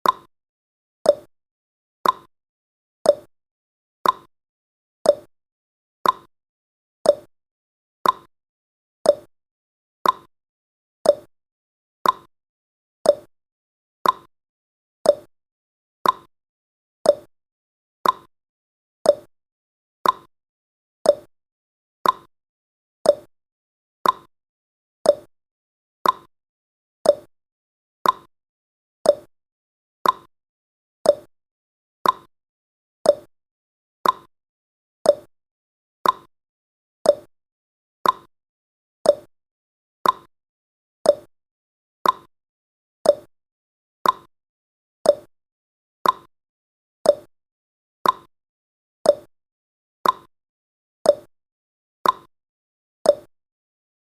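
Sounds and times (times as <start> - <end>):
clock tick-tock: 0.0 - 0.3, 1.1 - 1.3, 2.0 - 2.3, 3.1 - 3.3, 4.0 - 4.3, 5.1 - 5.3, 6.0 - 6.3, 7.1 - 7.3, 8.0 - 8.3, 9.0 - 9.3, 10.0 - 10.3, 11.0 - 11.3, 12.0 - 12.3, 13.0 - 13.3, 14.0 - 14.3, 15.0 - 15.3, 16.0 - 16.3, 17.0 - 17.3, 18.0 - 18.3, 19.0 - 19.3, 20.0 - 20.3, 21.0 - 21.3, 22.0 - 22.3, 23.0 - 23.3, 24.0 - 24.3, 25.0 - 25.3, 26.0 - 26.3, 27.0 - 27.3, 28.0 - 28.3, 29.0 - 29.3, 30.0 - 30.3, 31.0 - 31.3, 32.0 - 32.3, 33.0 - 33.3, 34.0 - 34.3, 35.0 - 35.3, 36.0 - 36.3, 37.0 - 37.3, 38.0 - 38.3, 39.0 - 39.3, 40.0 - 40.3, 41.0 - 41.3, 42.0 - 42.3, 43.0 - 43.3, 44.0 - 44.3, 45.0 - 45.3, 46.0 - 46.3, 47.0 - 47.3, 48.0 - 48.3, 49.1 - 49.3, 50.0 - 50.3, 51.1 - 51.3, 52.0 - 52.3, 53.1 - 53.3.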